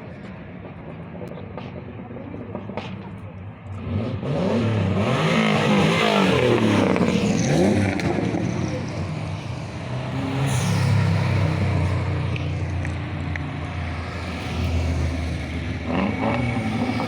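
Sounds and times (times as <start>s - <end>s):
car engine humming: 0.0s - 17.0s.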